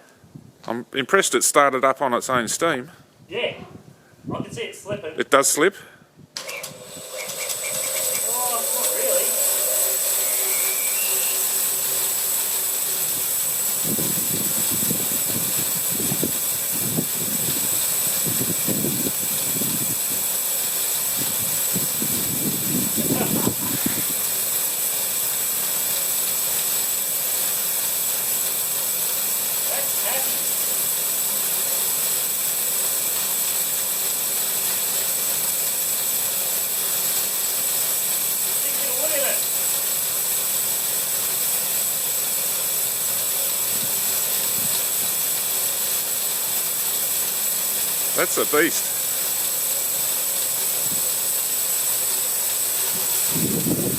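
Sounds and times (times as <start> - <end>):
high whine: 6.4 - 24.2
bandsaw motor hiss and whir: 6.4 - 53.9.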